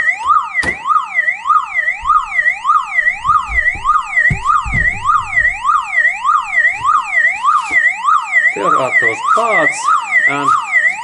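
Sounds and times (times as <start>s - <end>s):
car alarm siren warbling: 0.0s - 11.0s
low knocks: 2.0s - 7.0s.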